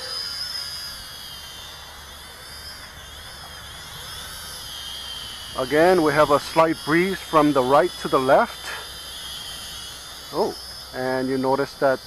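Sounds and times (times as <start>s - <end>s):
quadcopter motors whining: 0.0s - 12.0s.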